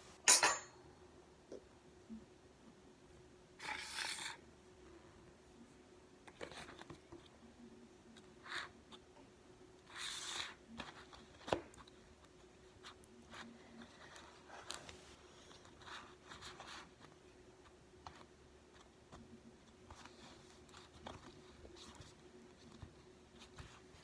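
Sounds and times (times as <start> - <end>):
hands rustling soft play material: 10.7 - 24.0.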